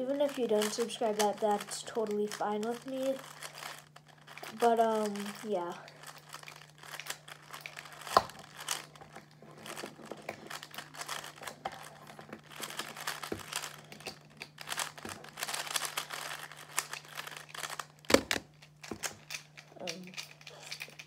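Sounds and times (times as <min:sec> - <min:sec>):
plastic puzzle cube clicking: 0:06.0 - 0:21.0.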